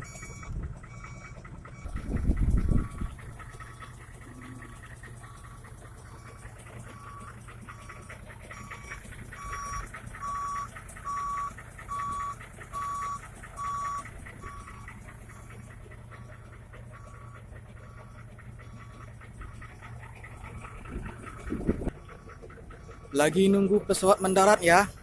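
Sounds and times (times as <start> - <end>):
electronic warning beeps: 0.0 - 2.0, 6.1 - 14.9
vehicle engine idling: 0.0 - 25.0.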